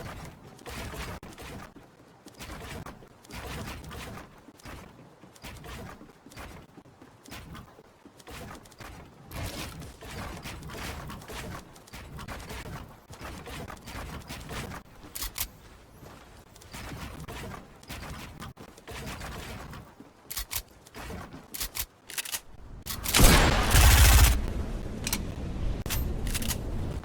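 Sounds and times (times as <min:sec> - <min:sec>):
sharp clicks: 0:21.6 - 0:27.0.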